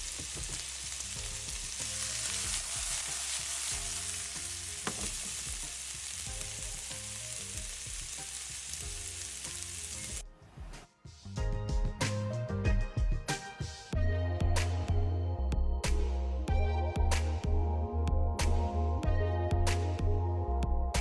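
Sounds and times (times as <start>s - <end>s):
food sizzling in oil: 0.0s - 10.2s
soft background music: 0.0s - 21.0s.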